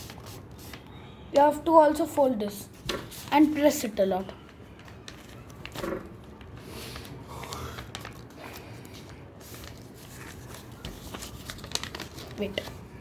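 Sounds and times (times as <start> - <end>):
paper folding and rustling: 2.4 - 13.0.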